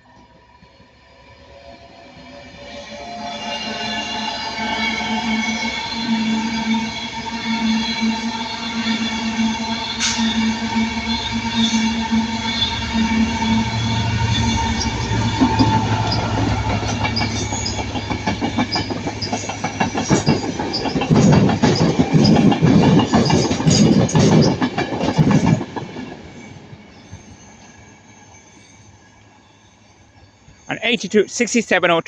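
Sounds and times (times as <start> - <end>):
diesel locomotive engine droning: 0.0 - 32.0
train wheels clattering over rail joints: 12.4 - 26.2.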